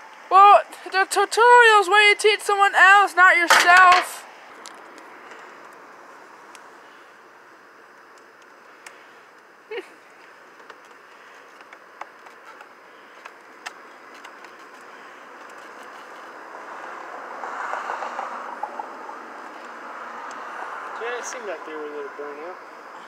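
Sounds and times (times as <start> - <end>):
background hum: 0.0 - 23.0
small clicks and taps: 10.2 - 15.7.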